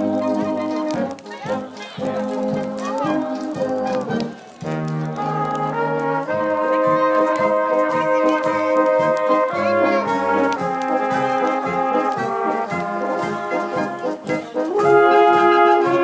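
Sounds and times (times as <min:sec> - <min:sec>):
brass instruments playing: 0:00.0 - 0:16.0.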